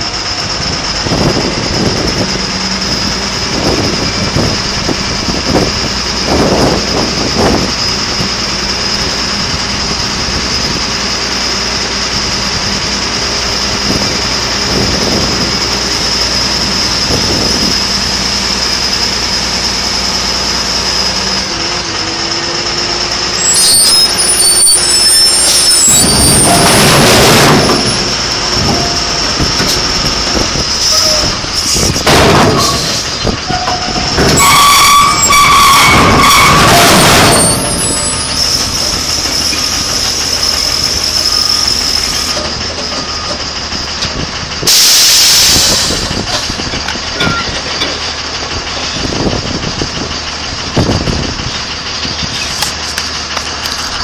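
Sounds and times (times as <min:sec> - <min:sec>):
diesel machinery whining: 0:00.0 - 0:54.0
high-pitched squeals: 0:23.2 - 0:43.5.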